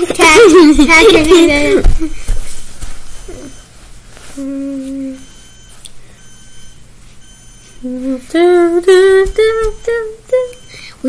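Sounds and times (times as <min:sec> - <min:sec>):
fire alarm beeping: 0:03.1 - 0:03.8, 0:04.8 - 0:11.0
child humming: 0:04.4 - 0:05.2, 0:07.8 - 0:10.6.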